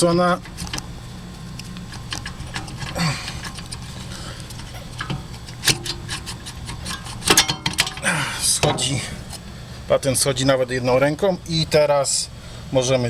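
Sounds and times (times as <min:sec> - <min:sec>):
metallic clicks and scrapes: 0:00.0 - 0:08.1
low steady hum: 0:00.0 - 0:13.0.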